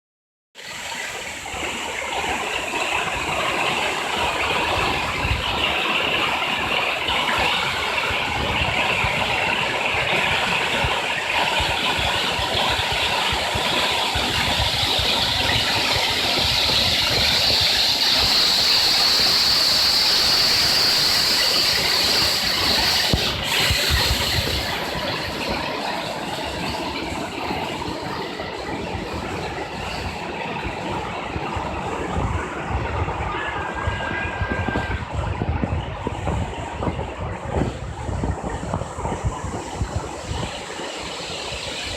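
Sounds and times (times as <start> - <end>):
waterfall rushing: 14.6 - 26.5.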